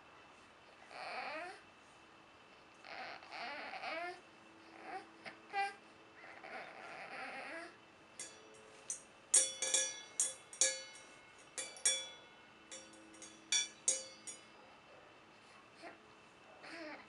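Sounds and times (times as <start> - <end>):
metal bowl struck ringing: 9.3 - 14.5.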